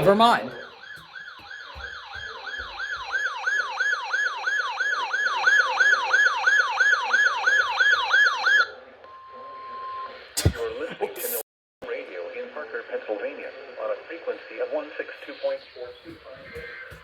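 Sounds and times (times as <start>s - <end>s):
electronic siren alarm sweeping: 0.0s - 10.3s.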